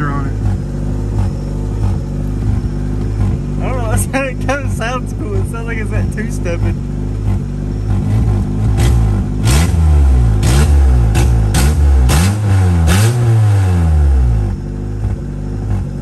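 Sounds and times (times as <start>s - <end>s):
exhaust pops: 0.0s - 13.6s
car engine revving: 0.0s - 16.0s.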